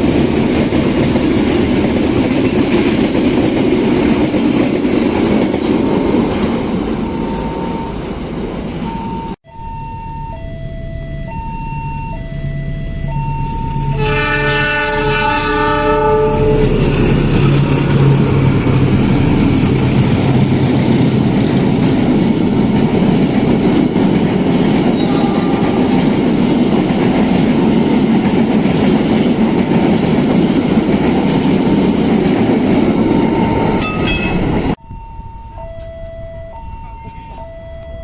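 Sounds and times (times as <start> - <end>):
train clattering past: 0.0 - 9.3, 13.1 - 34.8
electronic warning tone: 6.6 - 14.1, 33.0 - 34.2, 34.8 - 38.0
train horn: 12.3 - 17.0, 25.0 - 26.2.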